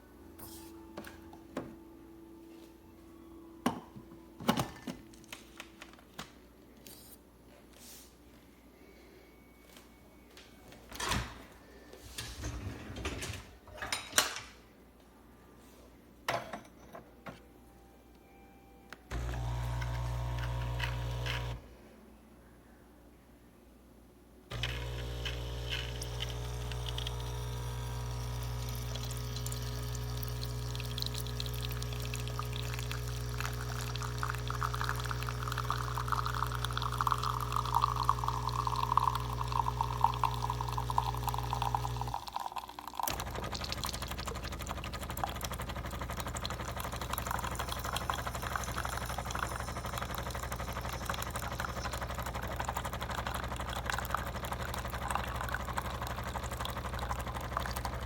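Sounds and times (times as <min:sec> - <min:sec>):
espresso machine pump humming: 0:19.1 - 0:21.7, 0:24.5 - 0:58.0
liquid pouring: 0:24.5 - 0:58.0
rough noisy liquid flow: 0:43.0 - 0:58.0.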